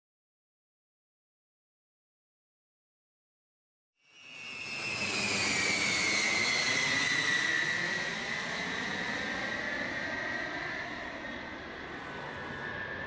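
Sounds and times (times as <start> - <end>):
jet engine whine passing: 4.1 - 13.0.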